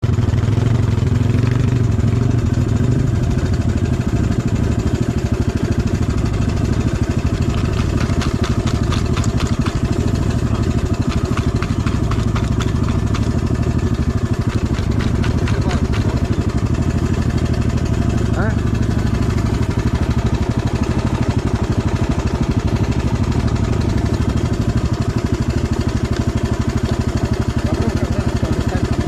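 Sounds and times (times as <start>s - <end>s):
atv engine idling: 0.0s - 29.0s
sharp clicks: 7.5s - 10.2s.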